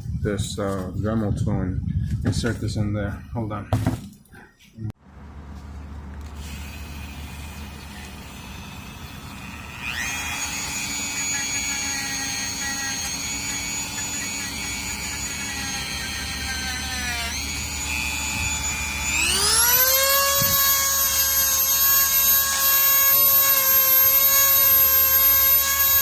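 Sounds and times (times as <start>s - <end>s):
rotary tool motor whine: 5.9s - 26.0s.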